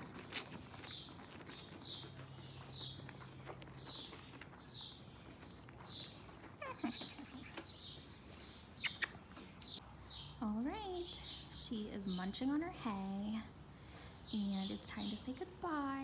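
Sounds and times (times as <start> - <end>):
bird chirping: 3.8 - 12.3.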